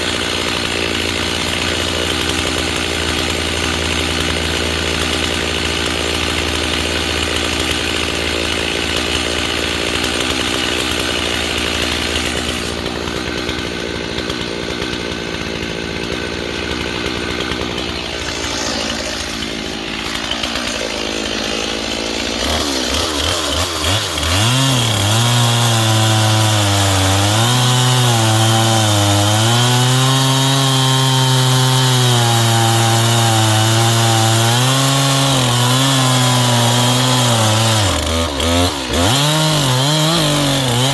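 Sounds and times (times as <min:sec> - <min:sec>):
chainsaw running: 0:00.0 - 0:40.9.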